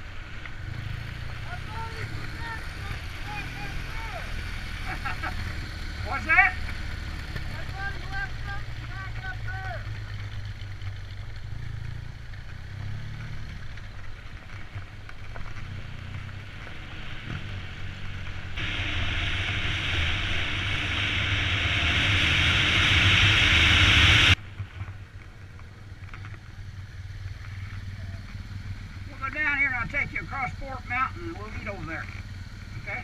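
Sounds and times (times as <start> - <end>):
vehicle engine running: 0.0 - 33.0
loud rushing hiss: 16.7 - 24.4.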